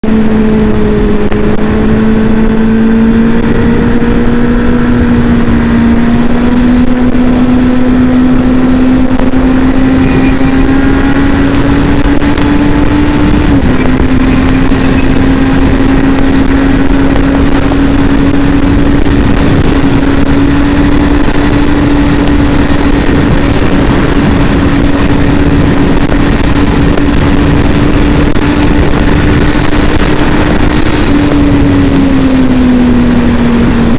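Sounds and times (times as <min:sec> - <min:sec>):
motorcycle engine at high revs: 0:00.0 - 0:33.9.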